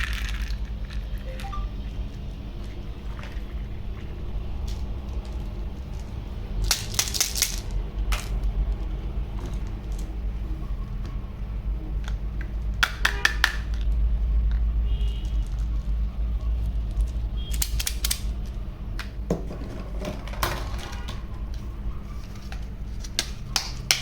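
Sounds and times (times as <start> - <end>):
small hard objects clattering: 0.0 - 1.6.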